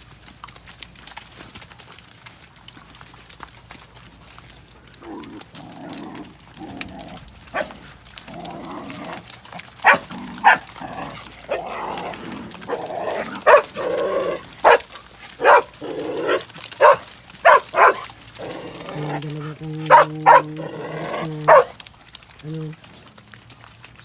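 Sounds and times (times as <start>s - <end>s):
dog drawn-out calls: 5.0s - 23.1s
dog barking: 7.6s - 7.8s, 9.8s - 10.7s, 12.7s - 18.1s, 19.8s - 20.7s, 21.4s - 21.8s.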